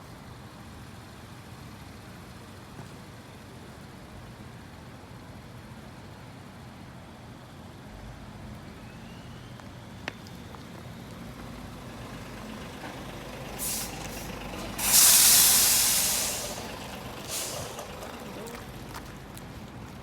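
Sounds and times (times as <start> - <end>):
traffic rumble: 0.0 - 20.0
truck air brakes hissing: 12.1 - 19.0.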